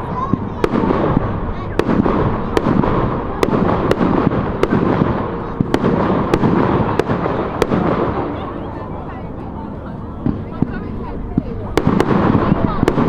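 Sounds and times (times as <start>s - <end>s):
fireworks bangs: 0.0s - 9.5s, 10.1s - 13.0s
fireworks crackling: 0.0s - 13.0s.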